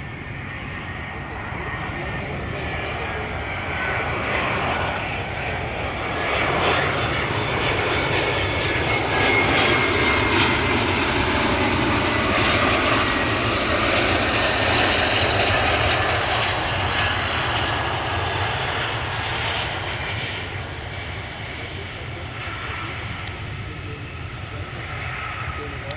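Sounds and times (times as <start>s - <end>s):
jet engines rushing: 0.0s - 25.9s.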